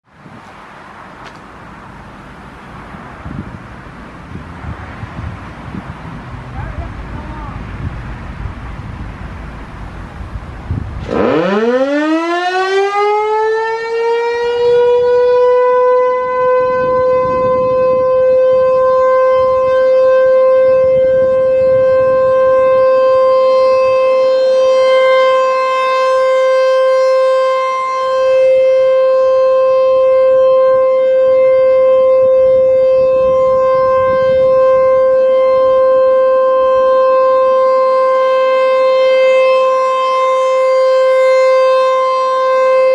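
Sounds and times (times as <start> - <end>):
outdoor warning siren winding up: 11.0 - 42.9.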